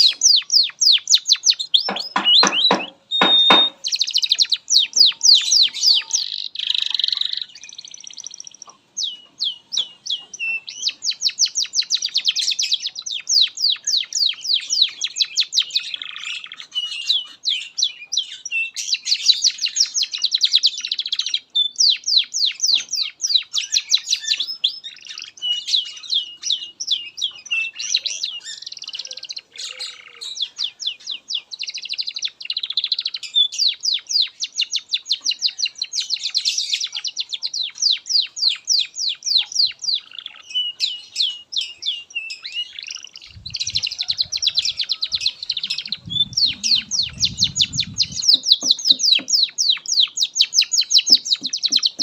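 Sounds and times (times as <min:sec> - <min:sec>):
canary singing trills: 0:00.0 - 0:52.0.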